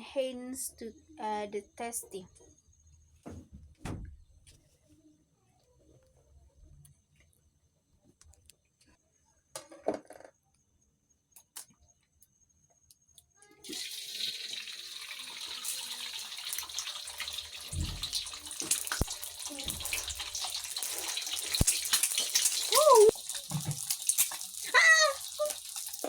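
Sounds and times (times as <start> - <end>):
egg frying in hot oil: 13.6 - 26.0.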